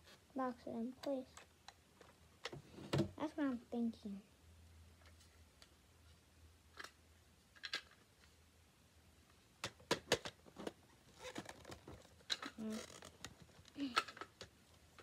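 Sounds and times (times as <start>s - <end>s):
plastic toy parts clicking: 12.2s - 15.0s.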